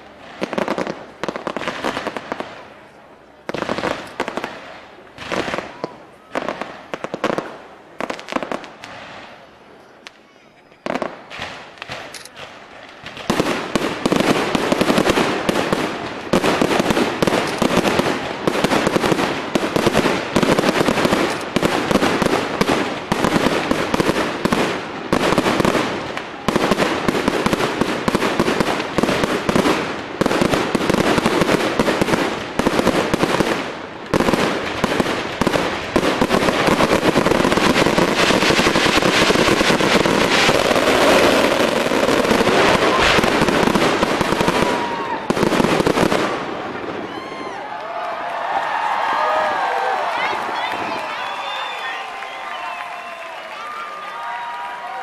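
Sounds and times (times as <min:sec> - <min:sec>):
fireworks bangs and crackles: 0:00.0 - 0:55.0.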